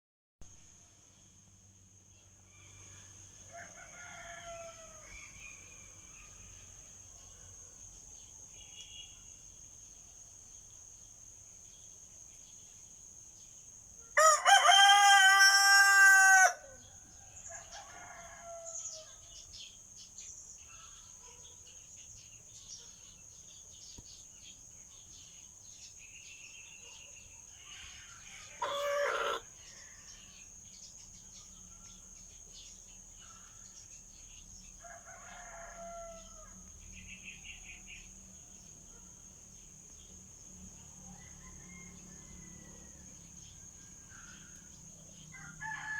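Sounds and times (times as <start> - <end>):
rooster crowing: 2.5 - 6.8, 14.2 - 19.2, 27.7 - 30.0, 34.8 - 36.6, 41.1 - 43.2, 45.3 - 45.9.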